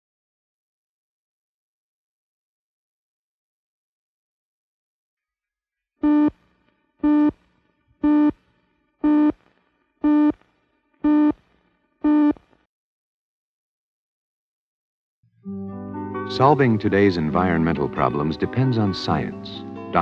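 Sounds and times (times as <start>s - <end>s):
countdown beeps: 7.0s - 7.3s, 8.0s - 8.3s, 10.0s - 10.4s, 11.1s - 11.3s, 12.1s - 12.4s.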